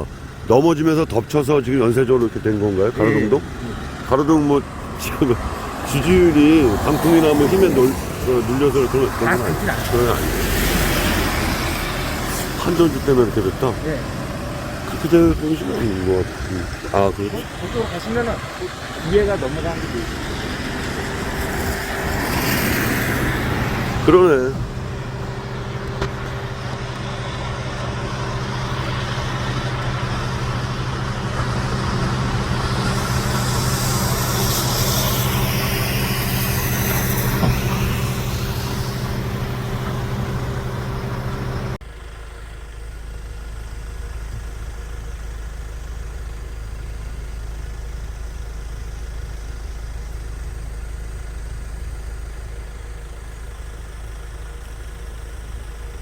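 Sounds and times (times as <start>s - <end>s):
rushing noise: 0.0s - 41.8s
vehicle engine idling: 0.0s - 56.0s.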